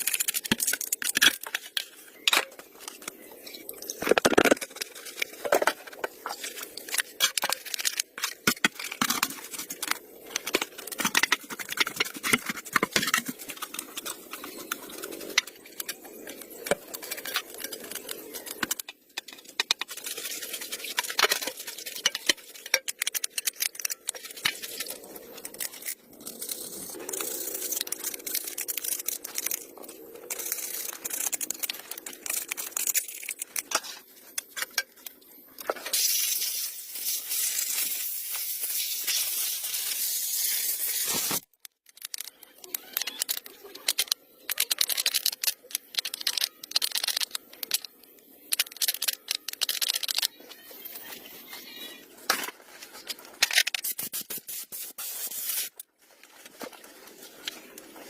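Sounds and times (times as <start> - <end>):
steady hiss: 35.7 - 41.5, 53.8 - 55.8.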